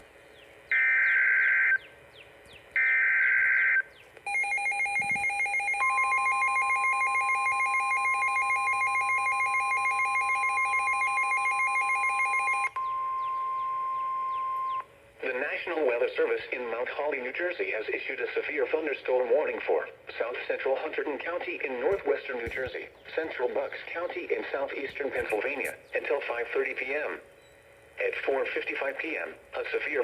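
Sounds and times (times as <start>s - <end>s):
pulsing electronic alarm: 0.7s - 1.8s, 2.8s - 14.8s.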